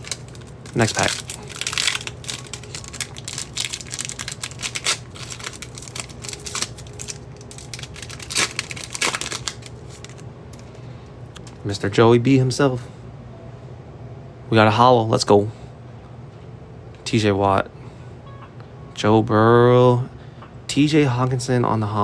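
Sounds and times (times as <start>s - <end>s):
cards clicking and rustling: 0.0s - 10.2s
foil wrapper crinkling: 0.0s - 10.7s.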